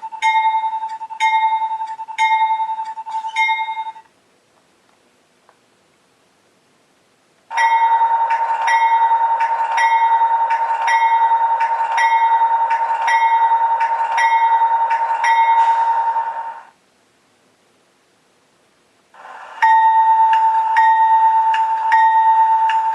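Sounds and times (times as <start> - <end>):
locomotive bell ringing: 0.0 - 4.0, 7.5 - 16.7, 19.6 - 22.9.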